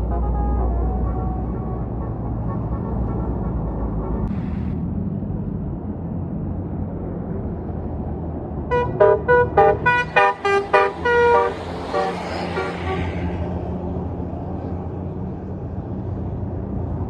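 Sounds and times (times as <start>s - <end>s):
bus horn playing a tune: 0.0s - 4.1s, 8.7s - 13.2s
diesel bus engine rumble: 0.0s - 17.0s
rushing noise: 8.7s - 14.2s.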